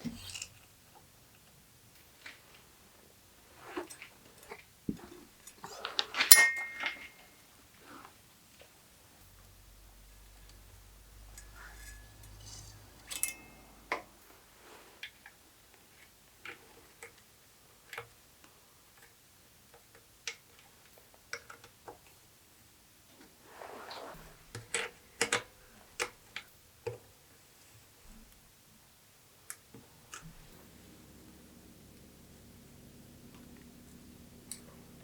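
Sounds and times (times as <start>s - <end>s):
metal parts and tools clicking: 6.3s - 7.2s, 11.4s - 13.7s
low hum: 30.2s - 35.0s.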